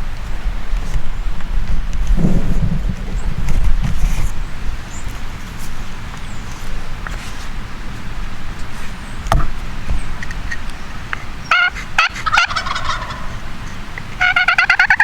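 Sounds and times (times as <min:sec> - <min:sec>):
wild turkey gobbling: 0:11.4 - 0:15.0.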